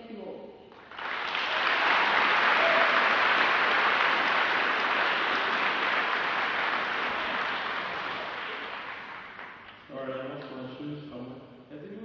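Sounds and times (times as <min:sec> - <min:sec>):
large audience applauding: 0:00.8 - 0:09.9.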